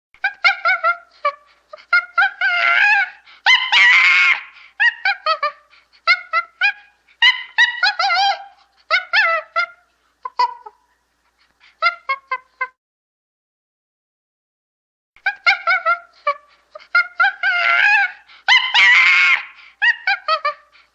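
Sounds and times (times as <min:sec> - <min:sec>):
chimpanzee hooting and screaming: 0:00.2 - 0:09.8, 0:15.2 - 0:20.8.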